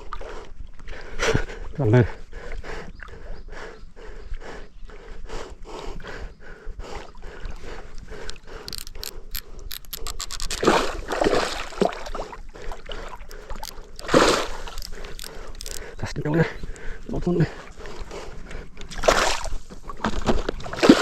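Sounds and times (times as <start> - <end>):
fishing reel clicking: 8.2 - 10.8, 13.2 - 16.0.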